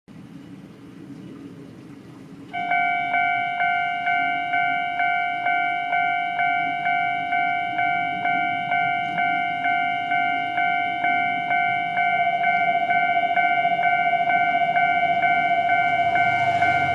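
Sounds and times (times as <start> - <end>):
level crossing warning bell: 2.5 - 16.9
low rumble: 7.3 - 16.9.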